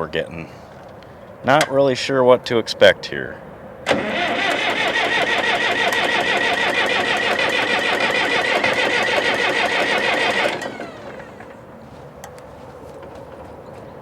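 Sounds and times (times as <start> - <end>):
starter cranking diesel engine: 3.9 - 11.8.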